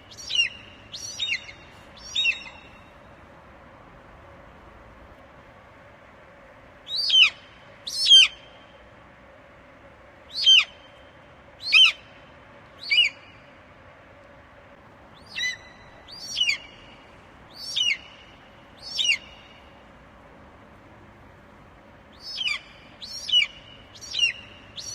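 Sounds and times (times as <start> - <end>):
eagle calling: 0.1 - 2.8, 15.2 - 16.9, 17.6 - 18.2, 18.8 - 19.4, 22.2 - 24.9.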